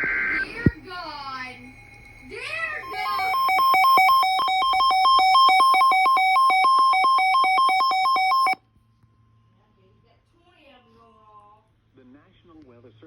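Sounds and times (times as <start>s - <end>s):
electronic alert tone alternating pitch: 2.8s - 8.6s.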